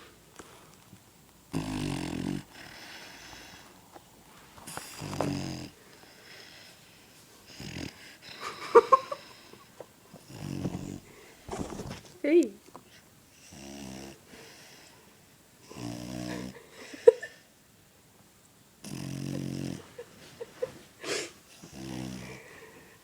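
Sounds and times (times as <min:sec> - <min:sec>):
soft breaths: 0:00.0 - 0:01.0, 0:02.4 - 0:13.2, 0:19.9 - 0:23.0
dog snoring: 0:01.5 - 0:03.7, 0:04.6 - 0:06.5, 0:07.4 - 0:08.4, 0:10.2 - 0:12.1, 0:13.3 - 0:14.9, 0:15.6 - 0:16.6, 0:18.8 - 0:20.0, 0:21.5 - 0:22.9.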